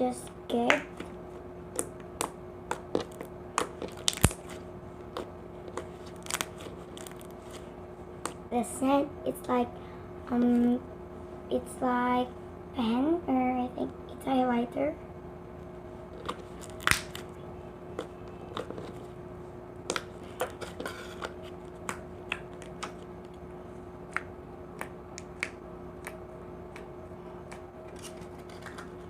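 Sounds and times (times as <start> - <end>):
hands squishing slime: 19.8 - 23.3.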